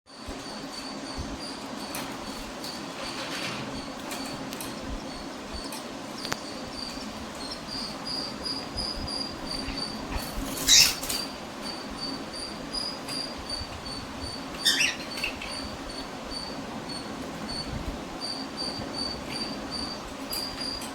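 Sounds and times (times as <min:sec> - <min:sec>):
cockatiels squawking: 0:10.6 - 0:11.2, 0:14.6 - 0:15.7.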